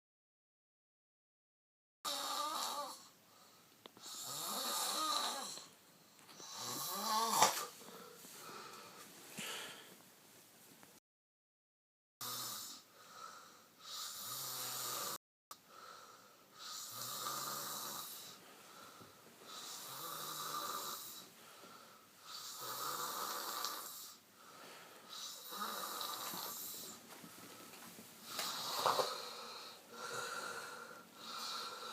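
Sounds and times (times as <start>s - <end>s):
man snoring loudly: 2.1s - 3.2s, 4.0s - 5.7s, 6.4s - 7.7s, 12.2s - 15.2s, 16.6s - 18.4s, 19.5s - 21.3s, 22.2s - 24.2s, 25.1s - 26.9s, 28.2s - 31.9s.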